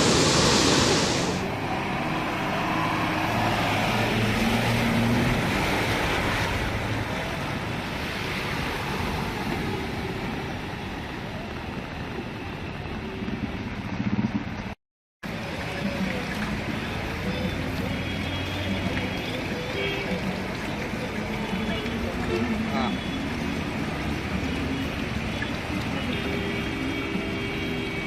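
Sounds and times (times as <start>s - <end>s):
loud rushing hiss: 0.0s - 1.5s
floodwater flowing: 0.0s - 28.0s.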